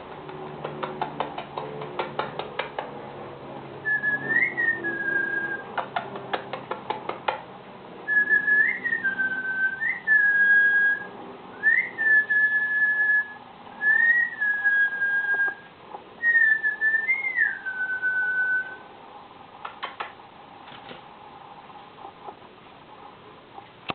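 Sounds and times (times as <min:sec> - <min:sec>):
cockatiel whistling: 0:03.8 - 0:05.8, 0:08.1 - 0:18.9.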